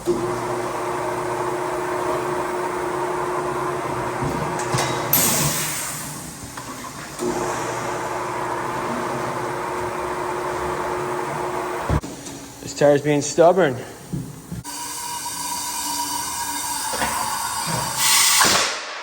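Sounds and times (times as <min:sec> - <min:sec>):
air-powered machine running: 0:00.0 - 0:12.7, 0:13.8 - 0:18.9
sharp air hiss: 0:15.8 - 0:19.0.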